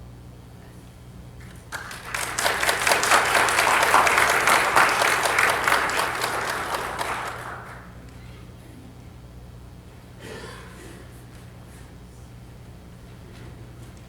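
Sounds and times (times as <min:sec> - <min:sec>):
audience applauding: 0:01.7 - 0:08.0.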